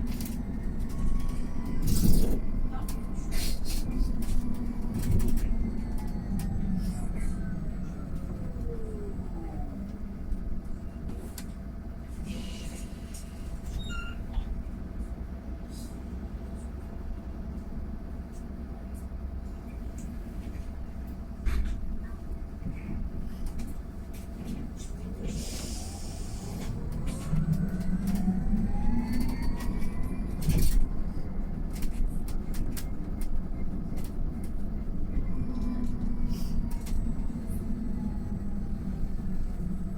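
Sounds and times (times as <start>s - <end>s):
bus low rumble: 0.0s - 39.9s
electric bus drive whine: 0.0s - 39.9s.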